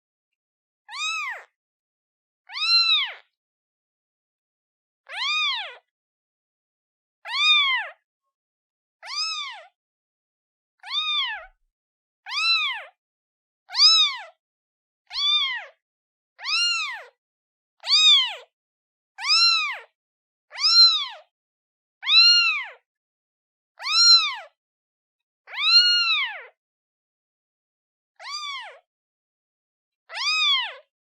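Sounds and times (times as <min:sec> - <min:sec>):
kitten meowing: 0:00.9 - 0:01.5, 0:02.5 - 0:03.2, 0:05.1 - 0:05.9, 0:07.3 - 0:08.0, 0:09.0 - 0:09.8, 0:10.8 - 0:11.6, 0:12.3 - 0:13.0, 0:13.7 - 0:14.3, 0:15.1 - 0:15.8, 0:16.4 - 0:17.2, 0:17.8 - 0:18.4, 0:19.2 - 0:19.9, 0:20.5 - 0:21.3, 0:22.0 - 0:22.8, 0:23.8 - 0:24.6, 0:25.5 - 0:26.5, 0:28.2 - 0:28.8, 0:30.1 - 0:30.8.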